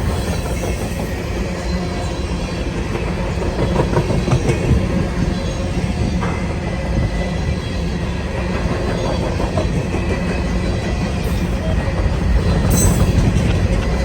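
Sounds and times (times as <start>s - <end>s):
freight train wheels rumbling: 0.0s - 14.0s
wheels clacking over rail joints: 8.4s - 14.0s.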